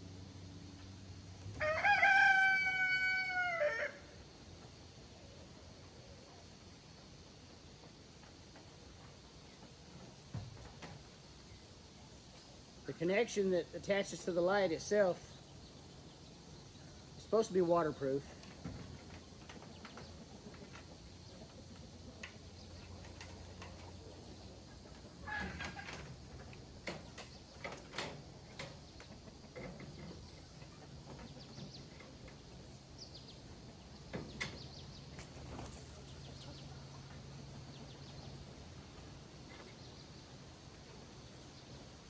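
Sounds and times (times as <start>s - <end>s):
chickens clucking: 18.5s - 41.8s.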